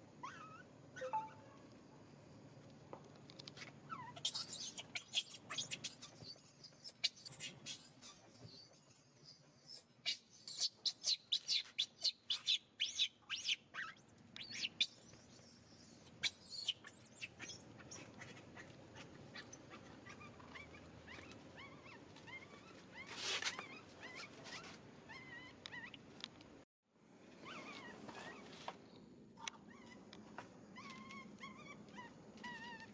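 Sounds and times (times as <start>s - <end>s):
baby monkey screaming: 0.2s - 1.4s, 3.9s - 26.0s
monkey chirping cries: 0.2s - 1.4s, 3.9s - 26.0s.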